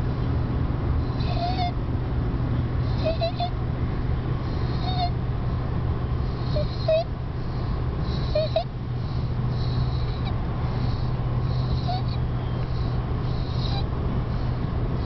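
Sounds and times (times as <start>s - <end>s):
steady low hum: 0.0s - 15.0s
child's squeaky breathing: 1.1s - 1.7s, 2.8s - 3.5s, 4.5s - 5.2s, 6.3s - 14.7s.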